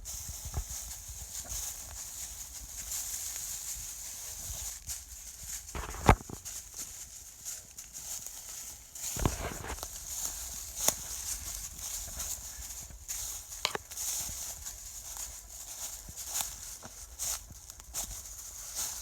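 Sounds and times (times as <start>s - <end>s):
footsteps through undergrowth: 0.0s - 19.0s.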